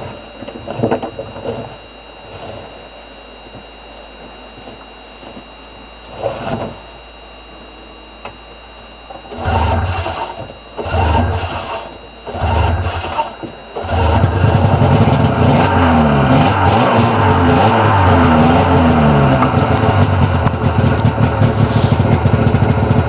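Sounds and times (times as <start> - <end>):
snowmobile engine idling and revving: 9.2 - 23.0.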